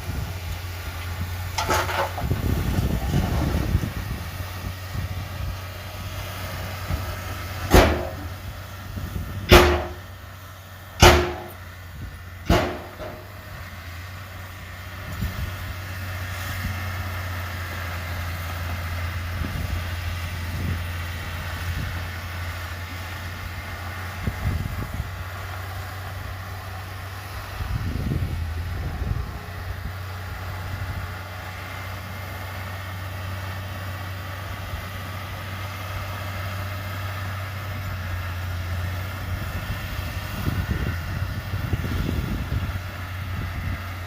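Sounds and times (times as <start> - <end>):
diesel engine running: 0.0 - 44.0
sharp loud bangs: 7.7 - 8.3, 9.5 - 10.1, 11.0 - 11.6, 12.5 - 13.3.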